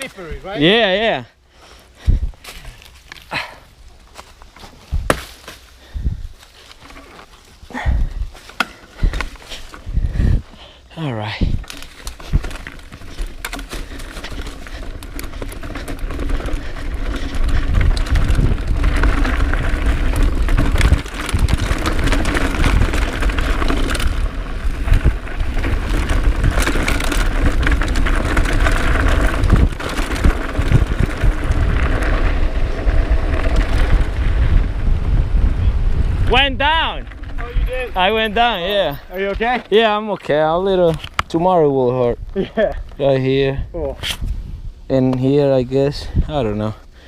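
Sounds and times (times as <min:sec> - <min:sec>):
bike tyres rattling over rocks: 0:00.0 - 0:01.2, 0:01.9 - 0:47.0
wind rumble on microphone: 0:02.0 - 0:02.9, 0:04.8 - 0:05.1, 0:05.8 - 0:06.4, 0:07.7 - 0:10.6, 0:11.2 - 0:39.7, 0:42.0 - 0:46.8
bike clattering: 0:04.1 - 0:10.7, 0:11.5 - 0:35.1, 0:36.8 - 0:41.3.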